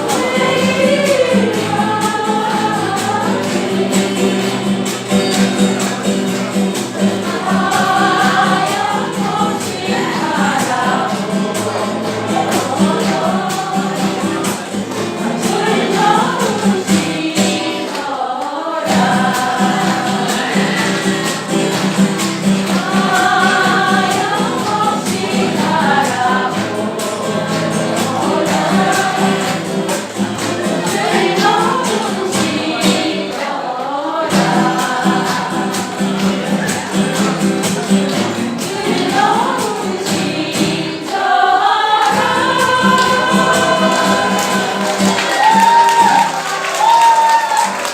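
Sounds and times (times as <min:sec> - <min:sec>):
group of voices singing: 0:00.0 - 0:47.9
instrumental accompaniment: 0:34.3 - 0:47.0.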